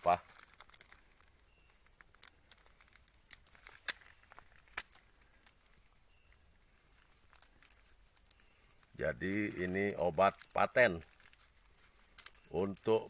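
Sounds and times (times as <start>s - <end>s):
insect trilling: 0.0s - 13.0s
sharp clicks: 1.7s - 5.5s.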